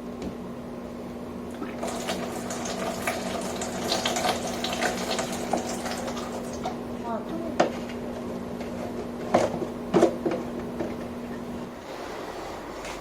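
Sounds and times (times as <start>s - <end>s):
water pouring into a tank: 1.5s - 6.8s.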